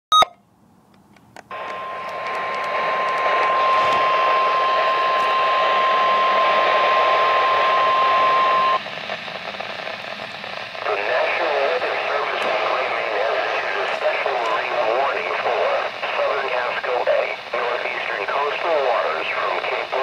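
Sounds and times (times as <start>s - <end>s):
steady alarm tone: 1.5s - 11.4s
radio static: 1.5s - 20.0s.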